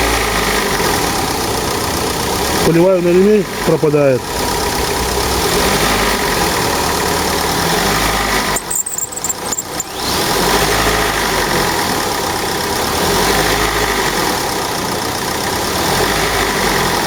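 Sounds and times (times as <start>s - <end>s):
car engine idling: 0.0s - 17.0s
drive belt squealing: 8.3s - 10.7s
high tinkling chirps: 8.6s - 10.0s.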